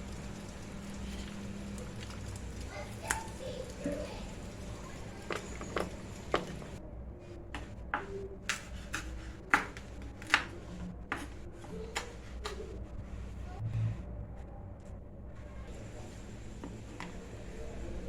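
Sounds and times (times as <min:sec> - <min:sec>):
low steady background hum: 0:00.0 - 0:18.0
kitchen utensils clicking and knocking: 0:05.0 - 0:06.8.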